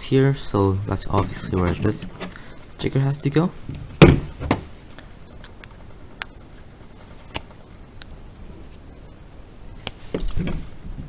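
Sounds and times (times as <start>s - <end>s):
knocks and handling noise: 3.6s - 4.8s, 9.9s - 11.0s.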